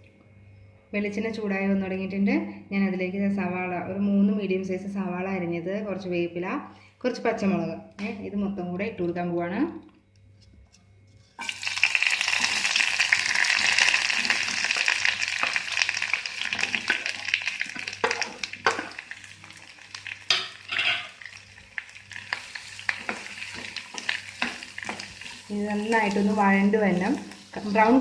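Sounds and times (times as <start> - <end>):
food sizzling in hot oil: 11.4 - 28.0
spoon stirring and scraping pan: 13.6 - 21.4, 22.2 - 28.0.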